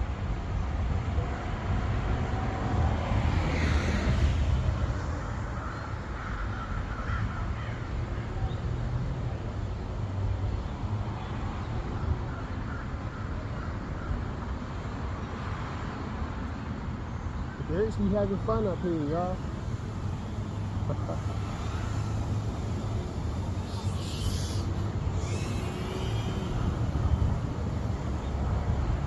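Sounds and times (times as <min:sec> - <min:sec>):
crows cawing: 0:05.5 - 0:08.0.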